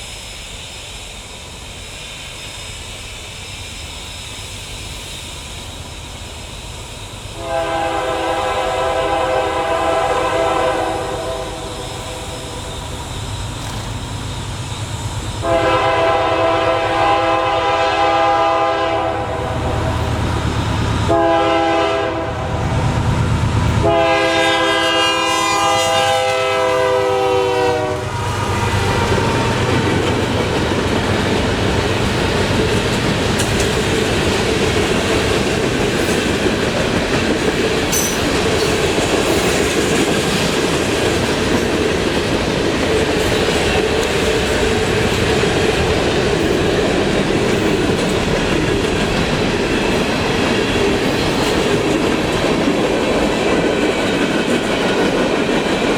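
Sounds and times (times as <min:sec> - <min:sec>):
train wheels clattering over rails: 0:00.0 - 0:55.9
train air horn blast: 0:07.4 - 0:12.9, 0:15.4 - 0:20.2, 0:21.0 - 0:29.7.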